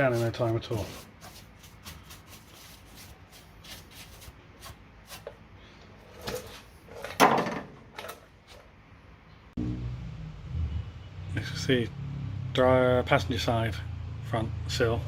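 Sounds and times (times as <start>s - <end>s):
loud clunk and scrape: 6.0s - 8.6s.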